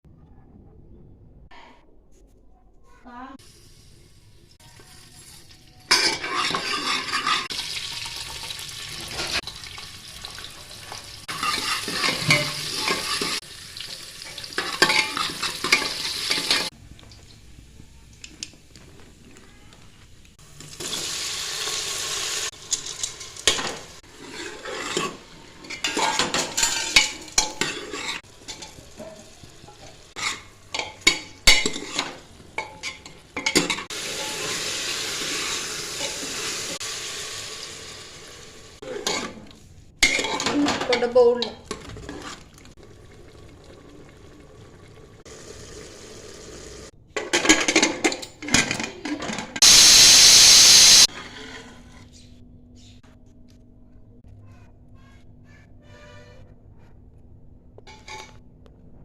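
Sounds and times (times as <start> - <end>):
food sizzling in hot oil: 3.4 - 17.5, 20.4 - 38.8, 44.1 - 46.9, 49.6 - 51.1
spoon scraping against pan: 5.9 - 7.6, 11.0 - 13.4, 22.7 - 34.6, 38.8 - 42.5.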